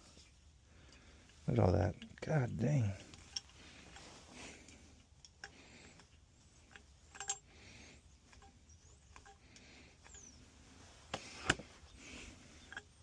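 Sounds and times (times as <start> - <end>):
hand tools clinking on metal pipe: 0.8 - 7.7, 8.3 - 10.4, 12.0 - 13.0.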